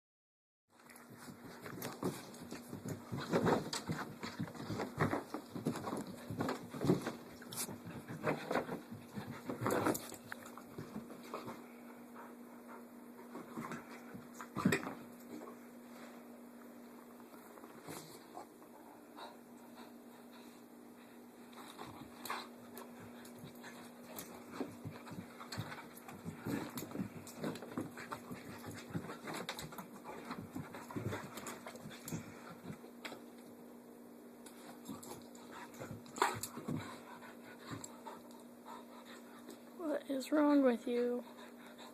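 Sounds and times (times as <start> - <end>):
puppy paws pattering on floor: 0.7 - 20.6, 21.4 - 33.6, 34.4 - 41.9
puppy panting: 35.2 - 39.7, 41.2 - 41.9.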